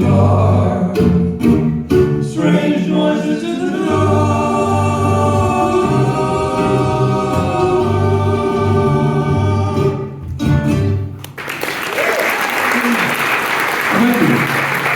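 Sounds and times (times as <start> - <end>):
voices singing harmony: 0.0 - 1.4, 2.2 - 10.3
bass and guitar: 0.0 - 2.5, 3.9 - 11.4.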